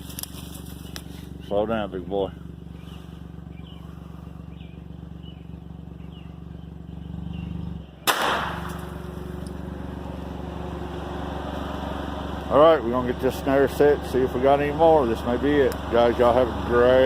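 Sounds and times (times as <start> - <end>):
vehicle engine idling: 0.0 - 17.0
gunshot with echo: 8.0 - 9.0.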